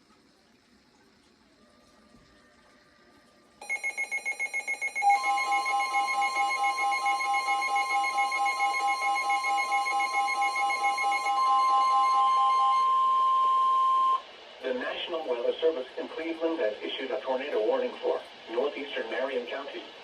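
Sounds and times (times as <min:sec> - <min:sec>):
rapid electronic beeping: 0:03.6 - 0:12.9
pulsing beep: 0:03.6 - 0:14.2
loud steady high alarm tone: 0:03.6 - 0:14.3.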